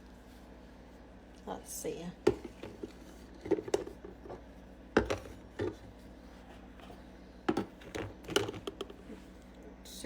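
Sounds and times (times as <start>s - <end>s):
faint fridge hum: 0.0s - 10.0s.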